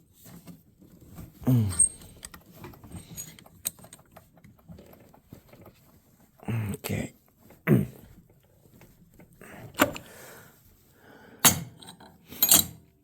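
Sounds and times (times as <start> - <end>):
person grunting: 1.4 - 2.0, 7.7 - 8.0
small metal parts clicking: 1.7 - 4.6, 12.4 - 12.8.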